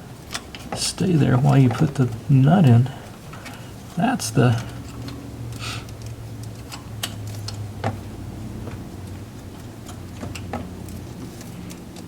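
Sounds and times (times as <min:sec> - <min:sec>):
steady low hum: 0:00.0 - 0:12.0.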